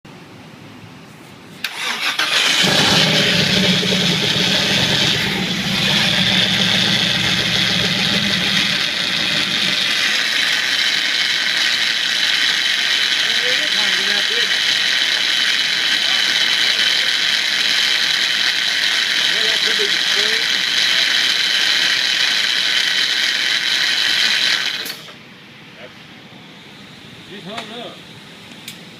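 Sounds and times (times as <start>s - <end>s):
starter motor grinding: 1.6s - 25.1s
engine cranking and starting: 1.6s - 25.2s.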